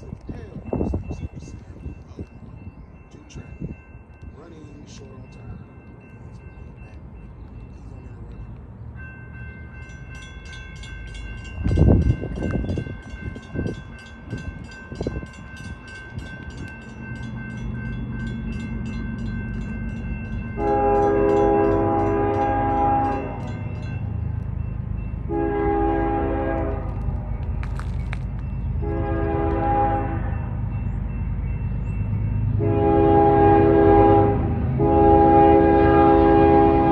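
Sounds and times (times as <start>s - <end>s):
diesel locomotive rumble: 0.0s - 36.9s
railroad crossing bell ringing: 0.0s - 36.9s
train horn blast: 20.6s - 23.5s, 25.3s - 27.0s, 28.8s - 30.4s, 32.6s - 36.9s.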